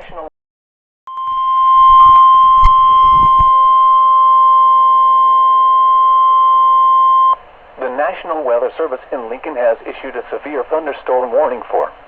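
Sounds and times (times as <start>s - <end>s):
steady warning alarm tone: 1.1s - 7.4s
low thumps: 1.9s - 3.8s.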